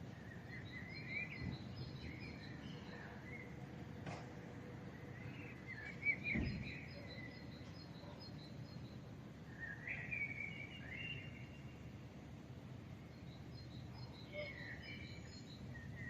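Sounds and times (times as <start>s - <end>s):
low city hum: 0.0s - 16.0s
small birds chirping: 0.0s - 16.0s
low thump: 6.3s - 6.7s.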